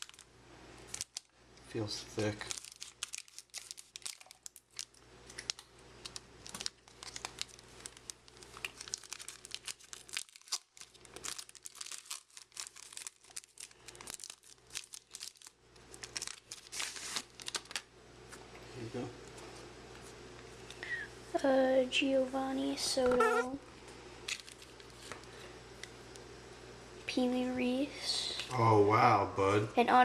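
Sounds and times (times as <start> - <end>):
wrapper tearing and crinkling: 0.0 - 0.3, 0.9 - 1.3, 2.2 - 17.9, 24.3 - 25.2.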